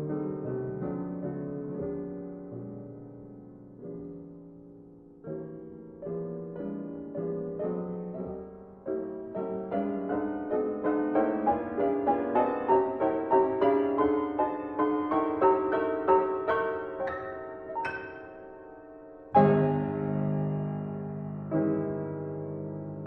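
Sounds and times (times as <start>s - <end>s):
piano music: 0.0s - 23.0s.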